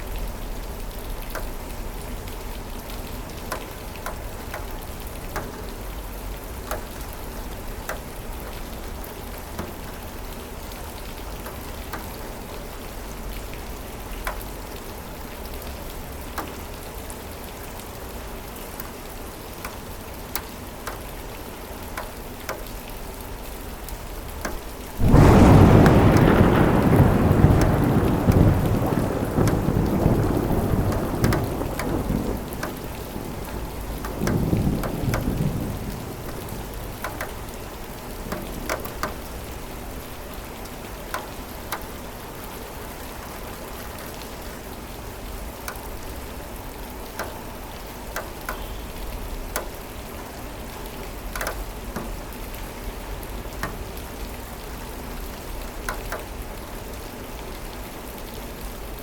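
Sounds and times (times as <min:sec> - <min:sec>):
raindrops ticking: 0:00.0 - 0:59.0
steady rain: 0:00.0 - 0:59.0
thunder rolling: 0:25.0 - 0:37.2.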